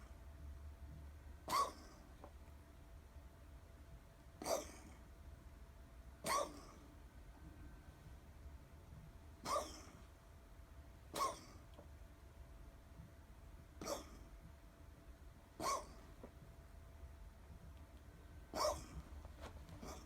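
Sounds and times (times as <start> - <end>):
short sharp coughs: 1.4 - 2.0, 4.4 - 5.0, 6.2 - 6.9, 9.4 - 10.0, 11.1 - 11.6, 13.8 - 14.3, 15.6 - 16.0, 18.5 - 19.0, 19.8 - 20.0.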